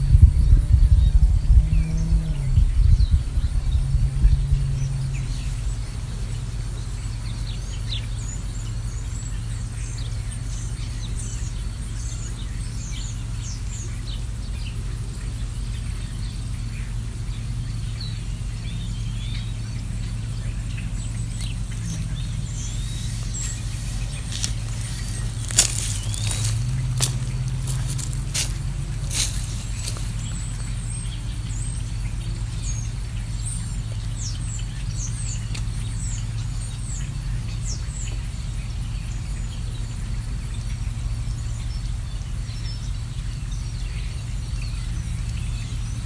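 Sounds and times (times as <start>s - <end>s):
steady low hum: 0.0s - 46.0s
songbirds chirping: 1.0s - 46.0s.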